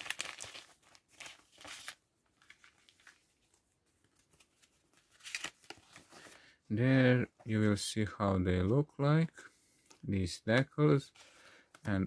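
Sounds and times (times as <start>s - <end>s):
plastic bag crinkling: 0.0s - 3.2s.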